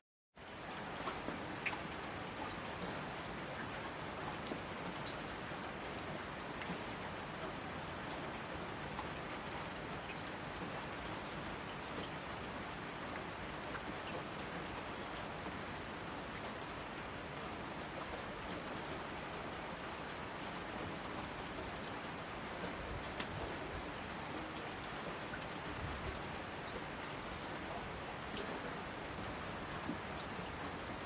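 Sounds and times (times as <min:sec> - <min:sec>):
steady rain hiss: 0:00.4 - 0:31.0
raindrops ticking: 0:23.0 - 0:30.8.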